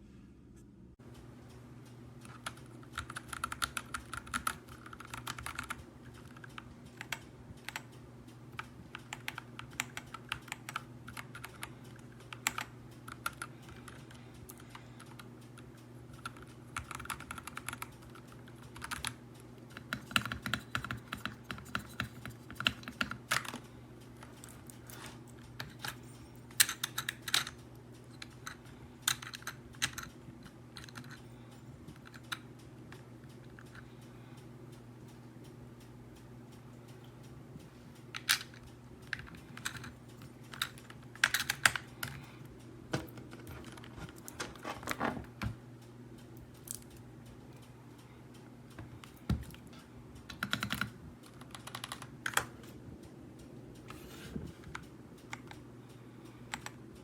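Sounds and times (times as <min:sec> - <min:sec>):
low steady hum: 0:00.0 - 0:57.0
mechanical keyboard typing: 0:02.2 - 0:31.2, 0:38.1 - 0:42.2, 0:43.0 - 0:45.5, 0:50.2 - 0:52.7.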